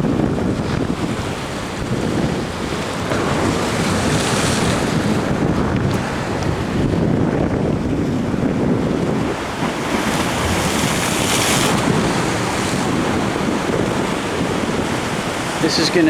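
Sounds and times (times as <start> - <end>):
ocean surf breaking on rocks: 0.0 - 16.0
wind buffeting microphone: 0.0 - 16.0.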